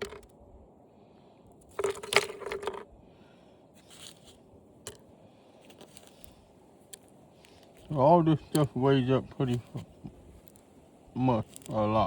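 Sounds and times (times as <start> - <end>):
plastic parts clattering: 0.0 - 0.2, 1.7 - 2.8.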